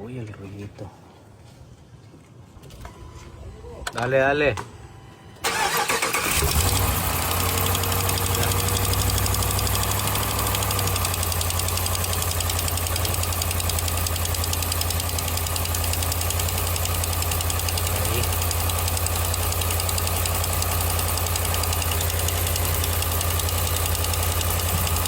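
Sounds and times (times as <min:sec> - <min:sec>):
engine running: 0:05.4 - 0:25.0
rapid exhaust ticking: 0:06.5 - 0:25.0.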